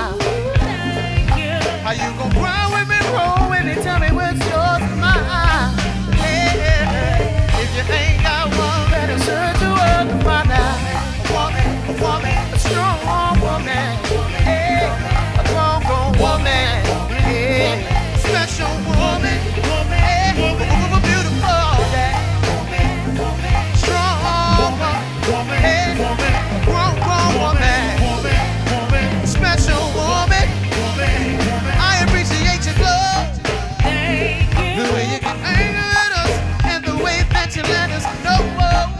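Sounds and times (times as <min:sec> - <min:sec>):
live band playing: 0:00.0 - 0:38.9.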